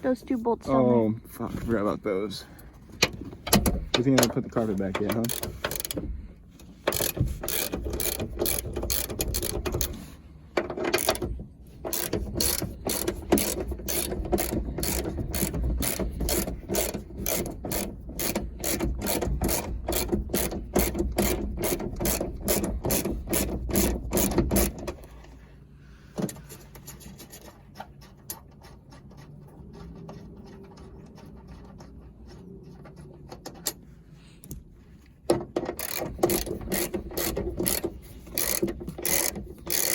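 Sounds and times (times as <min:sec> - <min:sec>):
ratchet wrench clicking: 0:05.0 - 0:06.0, 0:06.8 - 0:10.0, 0:10.8 - 0:24.8, 0:35.7 - 0:39.9.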